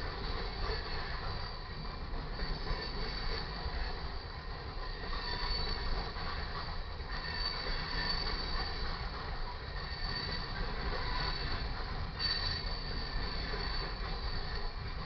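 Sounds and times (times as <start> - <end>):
high wheel squeal: 4.8 - 9.1, 9.7 - 14.7.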